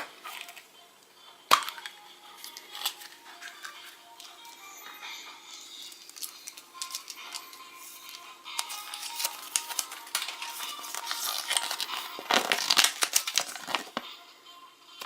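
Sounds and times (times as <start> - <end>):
faint background music: 0.0 - 15.0
wrapper crumpling and tearing: 2.4 - 4.4, 5.6 - 14.0.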